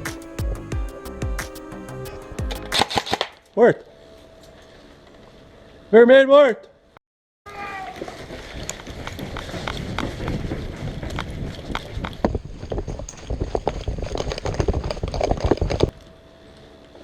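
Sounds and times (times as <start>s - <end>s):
wind on microphone: 8.2s - 16.0s
footsteps running: 12.2s - 15.9s
gear rattling: 12.2s - 15.9s.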